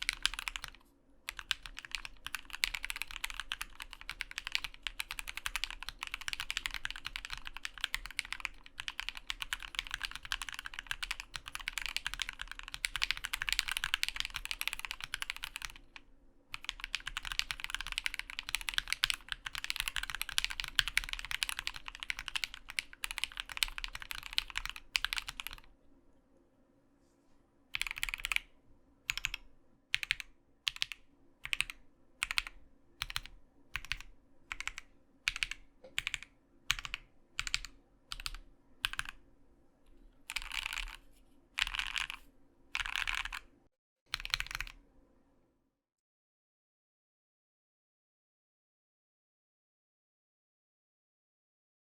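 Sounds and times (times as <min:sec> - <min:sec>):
fast mechanical keyboard typing: 0:00.0 - 0:25.7, 0:27.7 - 0:28.5, 0:29.1 - 0:39.2, 0:40.2 - 0:43.5, 0:44.1 - 0:44.8.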